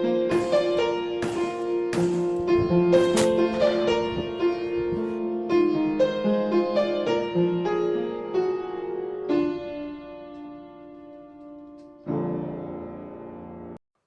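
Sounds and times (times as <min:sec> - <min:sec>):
piano-like keyboard melody: 0:00.0 - 0:13.8
sharp percussion hits: 0:00.3 - 0:04.3.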